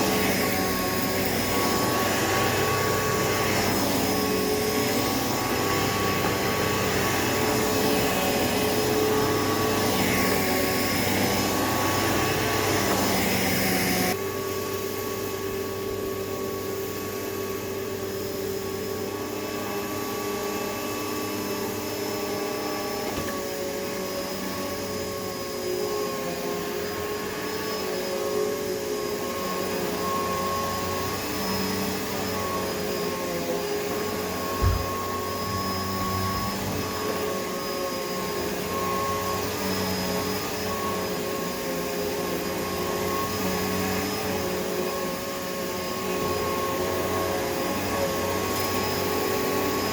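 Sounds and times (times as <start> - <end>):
vacuum cleaner running: 0.0 - 49.9.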